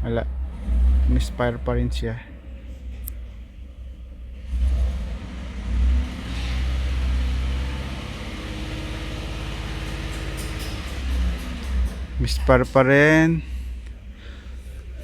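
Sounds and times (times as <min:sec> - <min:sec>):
pickup truck engine misfiring: 0:04.1 - 0:15.0.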